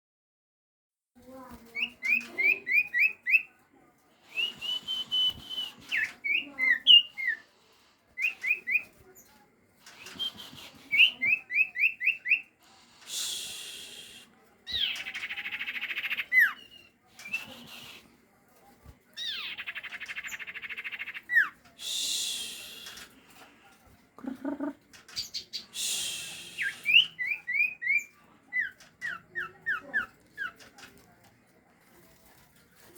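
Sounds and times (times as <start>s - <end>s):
bird harsh hissing: 12.6s - 14.3s, 21.8s - 23.2s, 25.3s - 27.2s.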